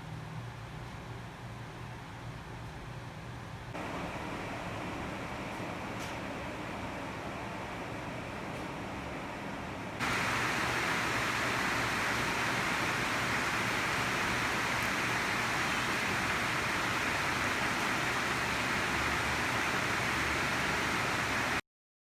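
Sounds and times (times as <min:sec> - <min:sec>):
rain hissing: 0:03.8 - 0:08.6, 0:10.0 - 0:21.6.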